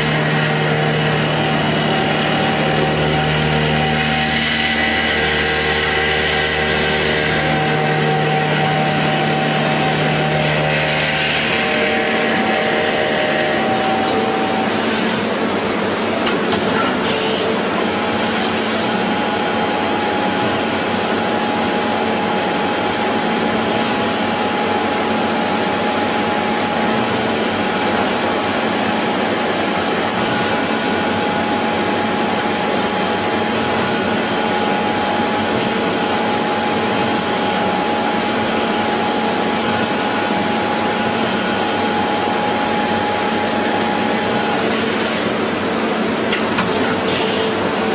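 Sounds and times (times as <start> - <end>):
machine tool running: 0.0 - 47.9
spindle whining tones: 17.3 - 47.9.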